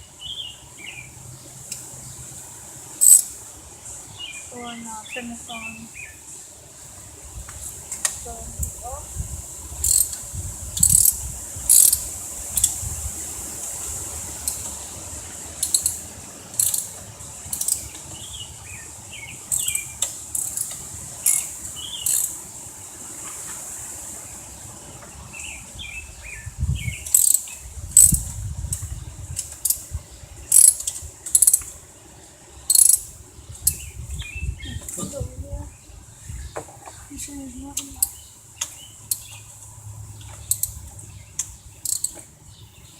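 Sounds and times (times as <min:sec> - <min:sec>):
metal tools clicking: 0:03.0 - 0:03.3, 0:09.8 - 0:10.2, 0:10.8 - 0:12.0, 0:14.4 - 0:14.8, 0:15.6 - 0:16.0, 0:16.6 - 0:18.0, 0:19.5 - 0:22.4, 0:27.1 - 0:29.8, 0:30.5 - 0:31.7, 0:32.7 - 0:33.8, 0:40.4 - 0:40.8, 0:41.4 - 0:42.2
socket wrench ratcheting: 0:03.0 - 0:03.3, 0:09.8 - 0:10.2, 0:10.8 - 0:12.8, 0:14.4 - 0:14.8, 0:15.6 - 0:16.0, 0:16.6 - 0:17.9, 0:19.5 - 0:22.4, 0:27.1 - 0:29.8, 0:30.5 - 0:31.7, 0:32.7 - 0:33.8, 0:40.4 - 0:40.8, 0:41.8 - 0:42.2.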